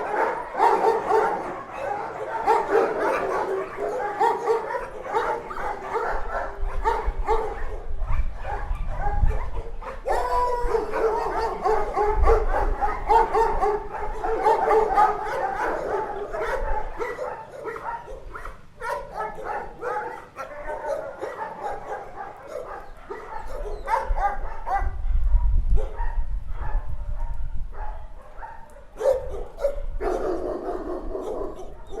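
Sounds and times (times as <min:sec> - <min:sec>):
dogs yipping and whimpering: 0:00.0 - 0:24.9, 0:27.8 - 0:32.0
many dogs barking: 0:00.0 - 0:32.0.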